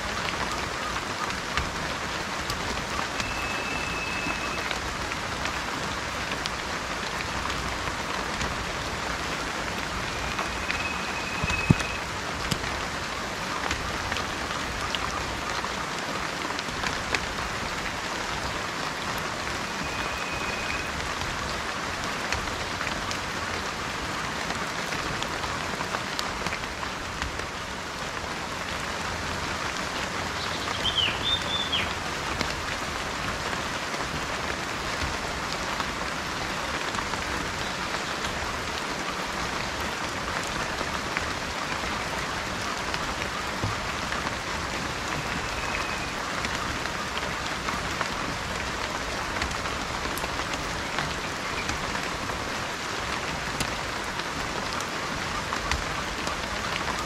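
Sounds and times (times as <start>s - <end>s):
steady rain: 0.0s - 57.0s
bird whistling and chirping: 3.2s - 4.7s, 10.2s - 12.0s, 19.7s - 20.9s, 30.4s - 31.9s.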